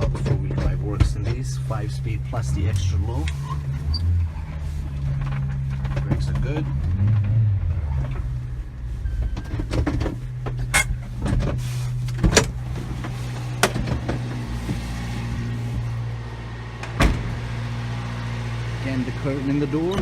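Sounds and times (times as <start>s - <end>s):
truck engine humming: 0.0s - 20.0s
sharp clicks and knocks: 5.0s - 7.4s.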